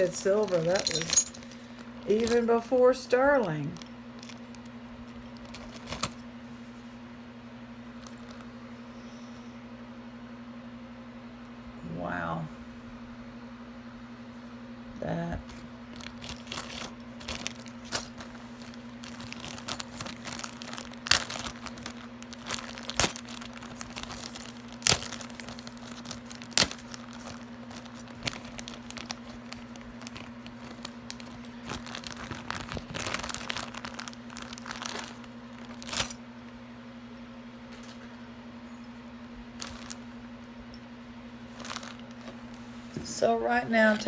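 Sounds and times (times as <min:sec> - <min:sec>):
rustling and crinkling: 0:00.0 - 0:08.5, 0:15.3 - 0:36.7, 0:39.5 - 0:40.4, 0:41.3 - 0:44.0
steady low hum: 0:00.0 - 0:44.0.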